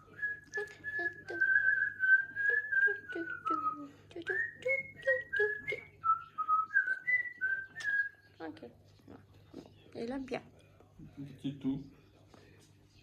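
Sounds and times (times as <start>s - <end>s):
person whistling a melody: 0.1s - 8.2s.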